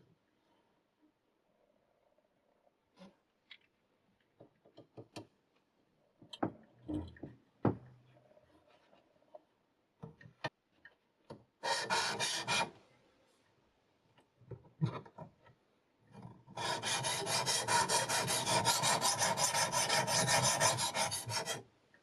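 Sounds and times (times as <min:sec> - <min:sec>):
sharpening stone rasping on knife: 0:16.6 - 0:21.6.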